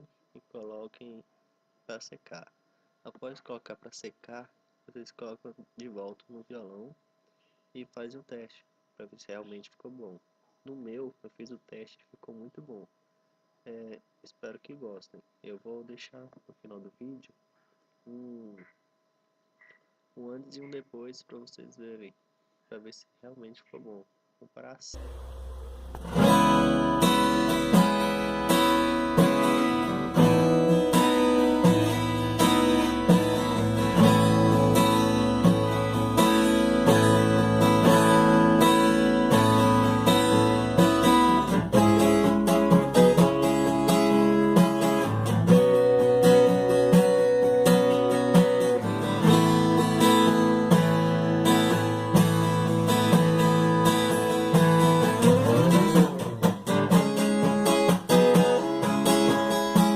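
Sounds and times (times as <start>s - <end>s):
acoustic guitar strummed: 25.0s - 59.9s.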